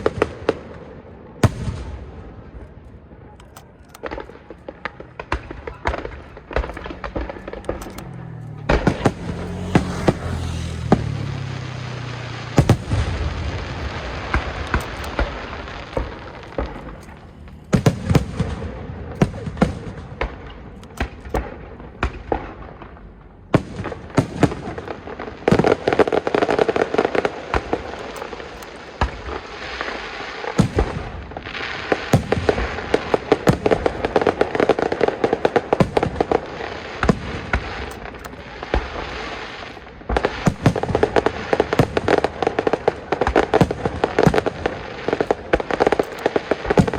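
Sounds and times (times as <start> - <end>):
fireworks bursting and crackling: 0.0 - 46.9.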